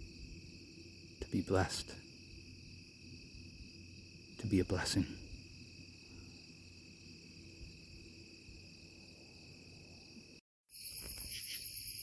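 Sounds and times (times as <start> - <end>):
crickets trilling: 0.0 - 12.0
fast-pulsing high insect call: 10.7 - 12.0.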